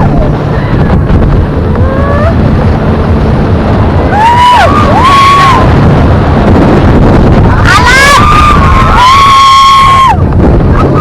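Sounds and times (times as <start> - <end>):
motorboat engine rumble: 0.0 - 11.0
wind buffeting microphone: 0.0 - 11.0
people whooping: 4.1 - 5.7, 7.5 - 10.2.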